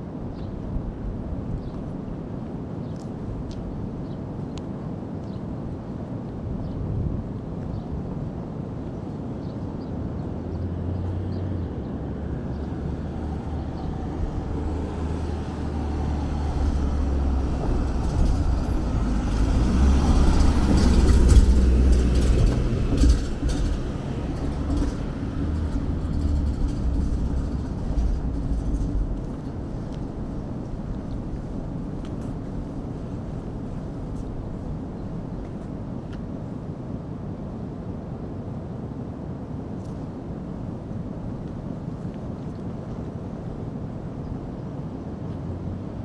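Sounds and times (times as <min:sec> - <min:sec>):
vehicle engine rumble passing: 0:10.3 - 0:36.4.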